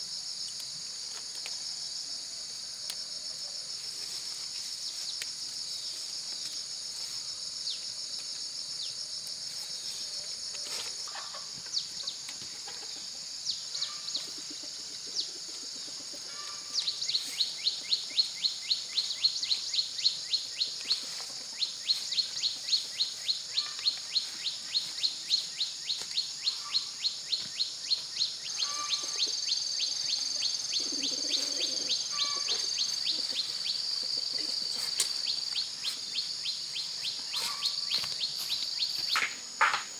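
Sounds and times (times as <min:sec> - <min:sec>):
high-pitched insect chorus: 0:00.0 - 0:39.9.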